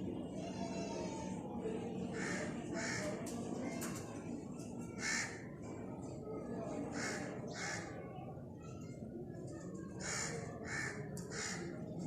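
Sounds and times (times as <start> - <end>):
crows cawing: 2.2 - 3.1, 5.0 - 5.4, 6.9 - 8.0, 10.0 - 11.7.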